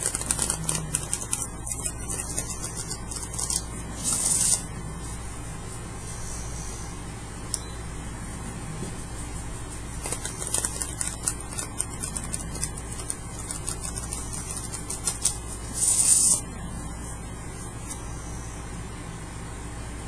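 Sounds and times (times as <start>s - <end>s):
cards being shuffled: 0.0s - 4.7s, 10.0s - 16.4s.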